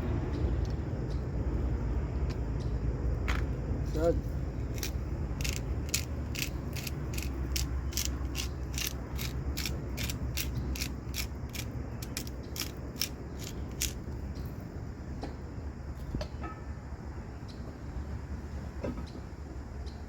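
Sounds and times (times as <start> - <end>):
steady low rumble: 0.0 - 16.0.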